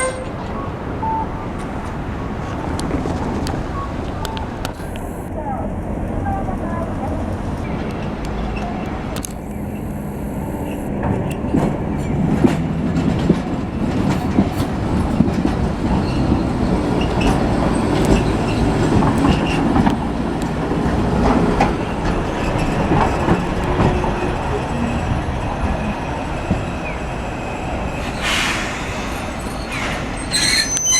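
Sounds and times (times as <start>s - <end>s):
tram rumbling past: 0.0s - 30.9s
wheels clacking over rail joints: 11.0s - 30.9s.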